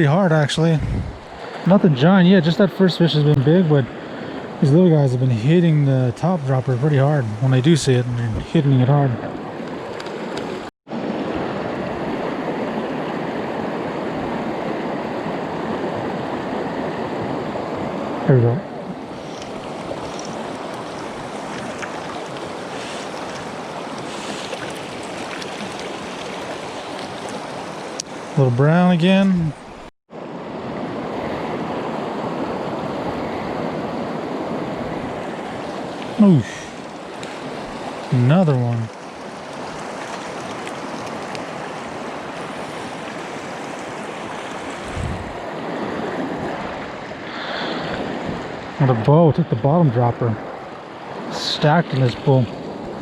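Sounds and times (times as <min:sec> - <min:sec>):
mountain stream rushing: 0:00.0 - 0:53.0
stream rushing over rocks: 0:19.0 - 0:29.9, 0:34.9 - 0:48.6.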